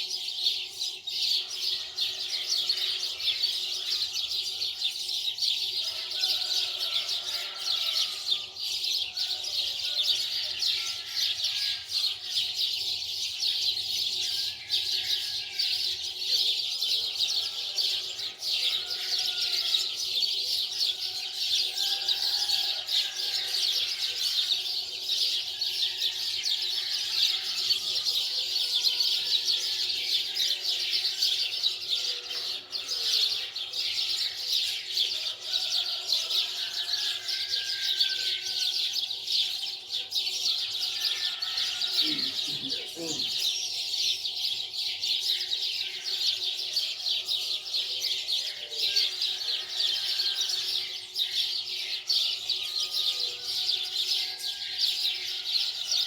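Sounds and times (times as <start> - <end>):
small birds chirping: 26.9 - 54.4.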